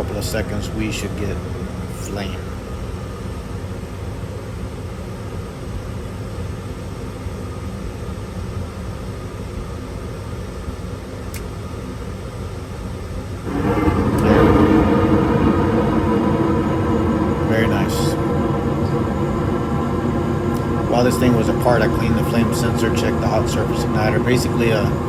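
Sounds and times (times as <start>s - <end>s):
louder fuller furnace sound: 0.0s - 2.7s, 13.4s - 25.0s
furnace inducer motor hum: 13.4s - 25.0s.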